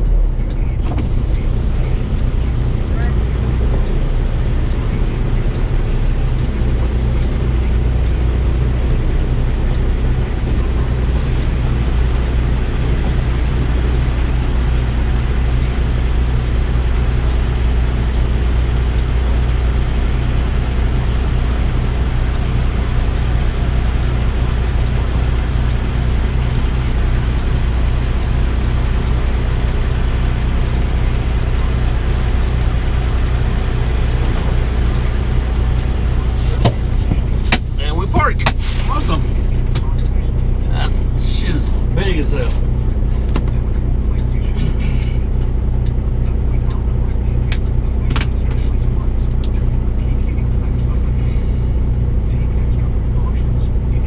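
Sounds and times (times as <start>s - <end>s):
diesel engine drone: 0.0s - 54.0s.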